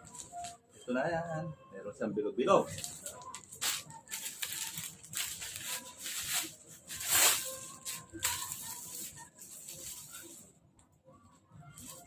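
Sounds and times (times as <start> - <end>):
plastic packaging and clothing rustling: 0.0 - 0.6, 2.6 - 10.6, 11.6 - 12.0.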